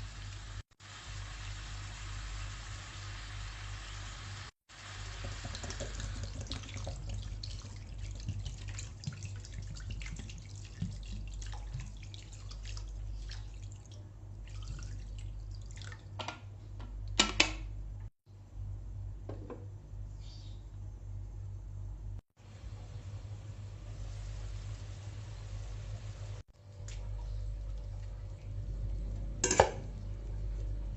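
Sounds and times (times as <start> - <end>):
water splashing and dripping: 5.1 - 16.3
steady low hum: 16.4 - 30.9.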